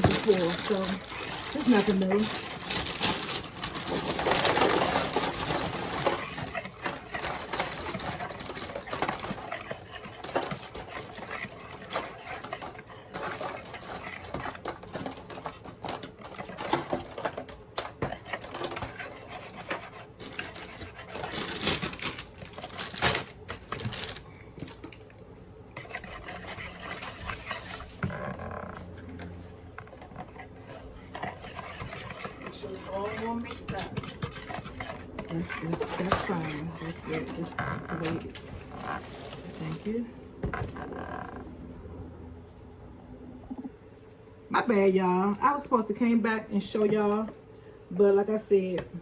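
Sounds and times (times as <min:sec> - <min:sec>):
whisk clicking against bowl: 0:31.3 - 0:37.5.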